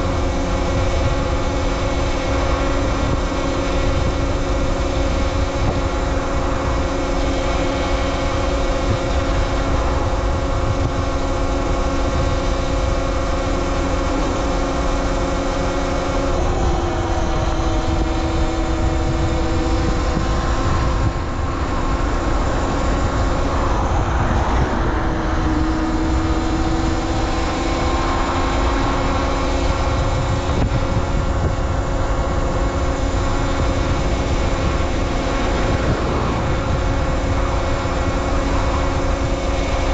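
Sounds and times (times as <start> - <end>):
electric motor whine: 0.0 - 39.9
low rumble: 16.0 - 39.9.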